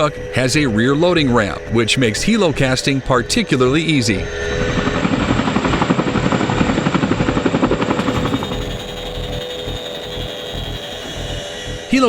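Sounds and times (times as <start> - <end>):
constant high whine: 0.0 - 12.0
steady rumble: 3.3 - 12.0
helicopter rotors thumping: 4.6 - 11.9.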